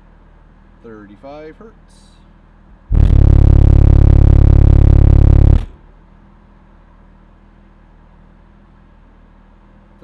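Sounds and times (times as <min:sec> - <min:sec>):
subwoofer low test tone: 0:02.8 - 0:05.8.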